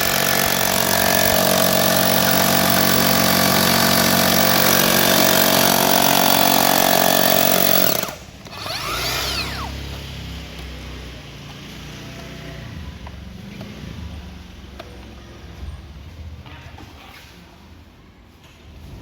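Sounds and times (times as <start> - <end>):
rotary hammer running: 0.0 - 9.9.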